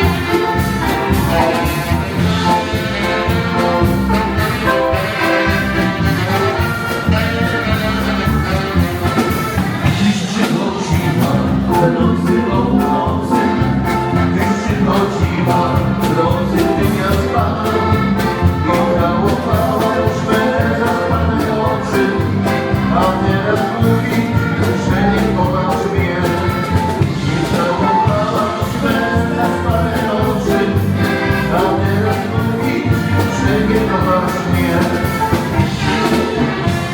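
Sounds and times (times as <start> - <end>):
folk dance band music: 0.0 - 36.9
person singing melody: 0.0 - 36.9.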